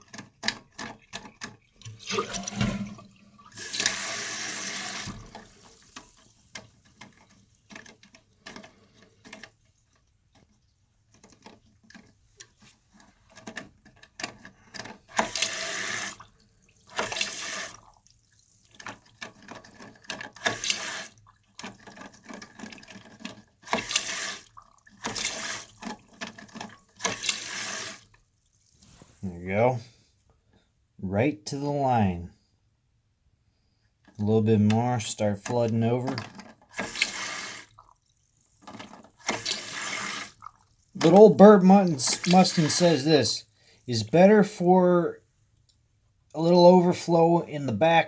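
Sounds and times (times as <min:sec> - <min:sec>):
water hissing into toilet tank: 0:01.4 - 0:06.8, 0:15.1 - 0:19.1, 0:20.3 - 0:21.5, 0:23.5 - 0:26.1, 0:26.8 - 0:29.2, 0:36.7 - 0:45.6
handling clicks and knocks: 0:05.1 - 0:15.4, 0:21.5 - 0:23.9, 0:34.0 - 0:37.0, 0:38.6 - 0:39.6.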